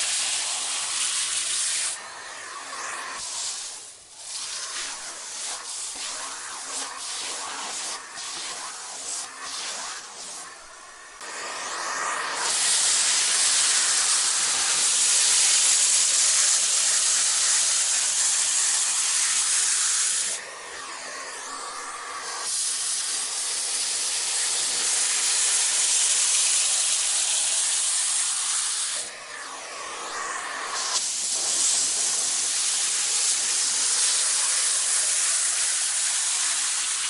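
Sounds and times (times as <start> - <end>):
vacuum cleaner running: 0.0 - 37.0.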